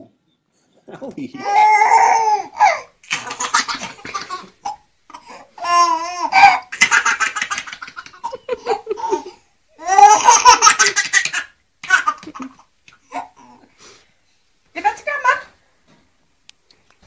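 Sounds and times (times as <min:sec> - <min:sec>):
baby laughing: 0:01.4 - 0:13.6.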